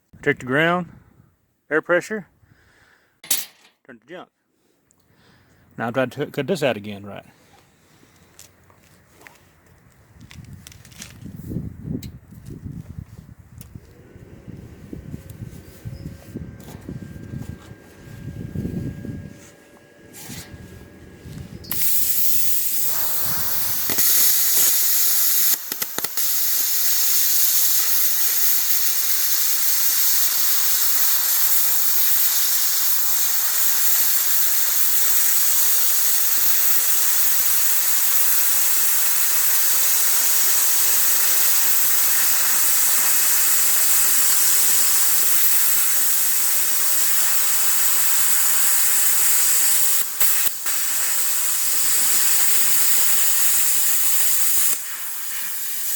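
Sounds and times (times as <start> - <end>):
plasma cutter hissing: 21.2 - 55.9.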